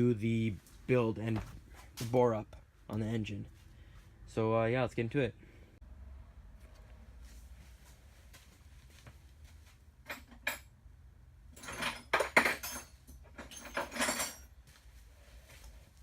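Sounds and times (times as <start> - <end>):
metal tools clinking and clattering: 10.0 - 10.7, 11.6 - 14.6.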